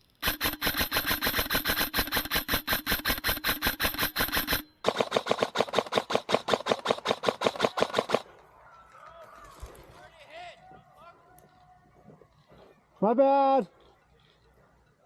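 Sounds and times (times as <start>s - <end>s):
airsoft gun firing full-auto: 0.2s - 8.2s.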